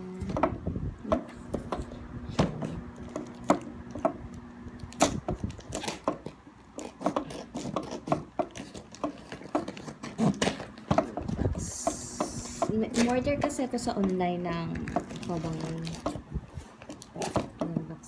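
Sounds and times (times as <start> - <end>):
low steady hum: 0.0 - 18.0
packaging rustling: 4.7 - 11.5, 12.9 - 17.6.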